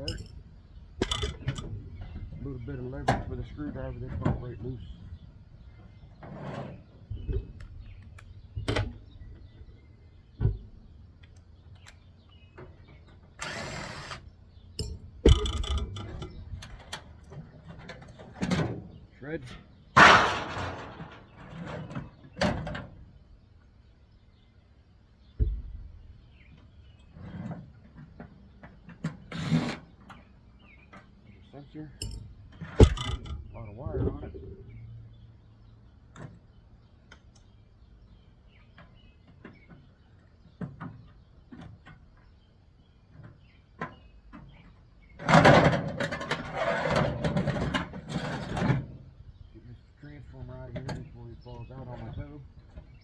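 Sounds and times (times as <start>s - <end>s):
metal parts clanging and knocking: 0.0s - 2.3s, 14.8s - 17.1s, 32.0s - 33.6s
metal rattling and scraping: 0.0s - 7.9s, 14.8s - 19.0s, 19.6s - 22.9s, 32.0s - 34.9s, 45.2s - 49.2s
dull thud: 32.7s - 34.4s.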